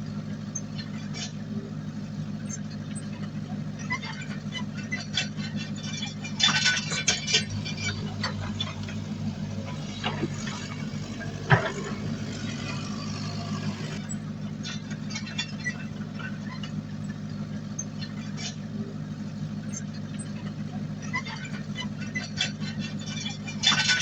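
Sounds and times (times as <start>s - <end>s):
heavy machinery diesel engine: 0.0s - 24.0s
metallic clanking: 6.5s - 14.0s.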